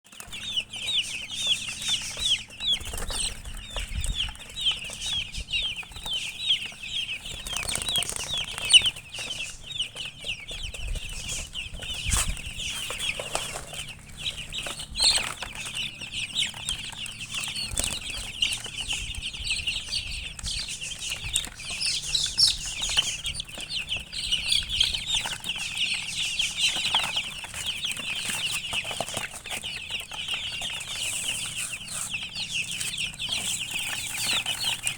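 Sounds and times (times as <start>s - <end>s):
baby chicks peeping: 0.0s - 34.9s.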